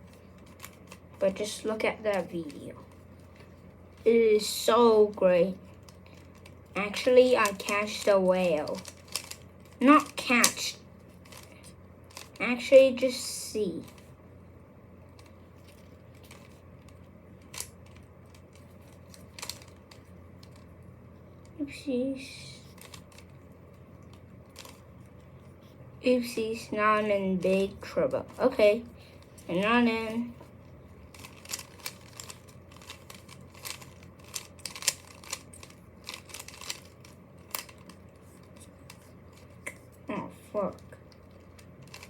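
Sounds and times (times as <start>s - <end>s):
plastic cube clicking: 8.7s - 10.6s, 12.1s - 12.4s, 17.4s - 20.6s, 22.6s - 23.3s, 24.5s - 24.8s, 31.1s - 39.9s, 41.2s - 42.0s.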